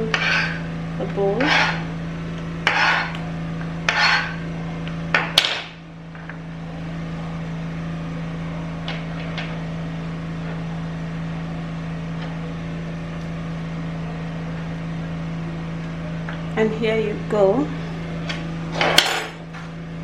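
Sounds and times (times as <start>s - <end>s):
steady low hum: 0.0s - 20.0s
onion scraped from board: 0.1s - 0.6s, 1.4s - 1.9s, 2.6s - 3.2s.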